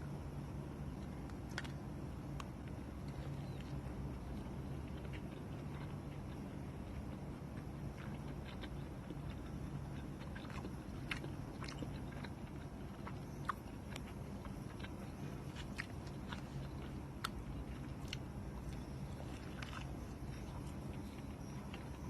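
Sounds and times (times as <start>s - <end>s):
steady low hum: 0.0s - 22.0s
person chewing food: 0.9s - 22.0s.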